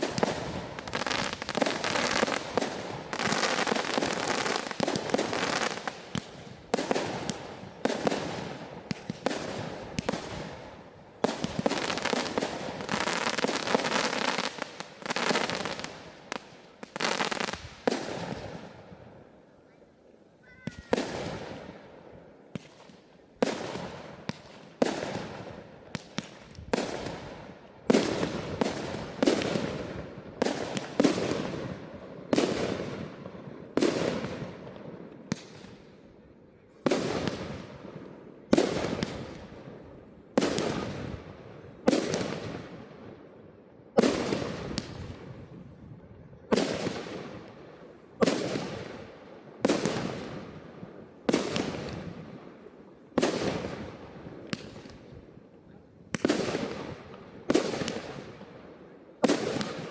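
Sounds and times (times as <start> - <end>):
fireworks bursting with sharp bangs: 0.0 - 19.8, 20.5 - 59.9.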